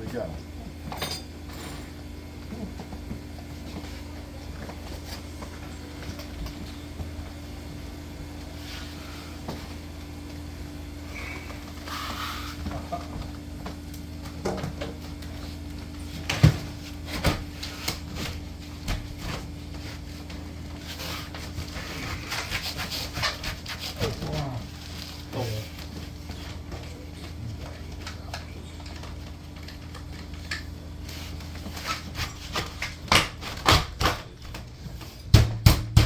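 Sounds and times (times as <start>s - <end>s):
steady low hum: 0.0s - 36.0s
rubbing and rustling: 16.8s - 26.8s.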